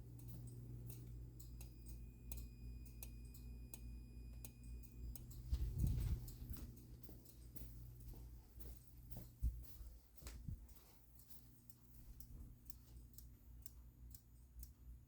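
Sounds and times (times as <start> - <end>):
fire alarm electrical clicking: 0.0 - 8.2, 10.7 - 14.9
faint high whine: 0.0 - 9.8
low mains hum: 0.0 - 15.0.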